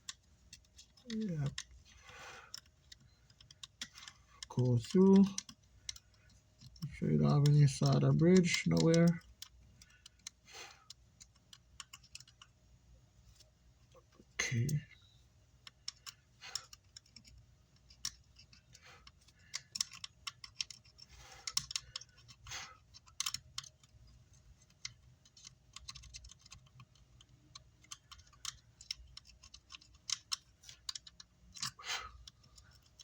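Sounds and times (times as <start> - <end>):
small hand tools clicking and tapping: 2.4 - 12.5, 15.6 - 33.0.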